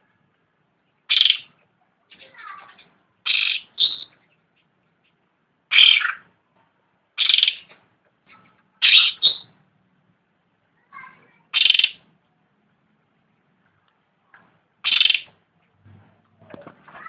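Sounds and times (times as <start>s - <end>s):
songbird calling: 1.1s - 1.6s, 3.2s - 4.4s, 5.7s - 6.3s, 7.2s - 7.7s, 8.8s - 9.6s, 11.5s - 12.0s, 14.8s - 15.3s.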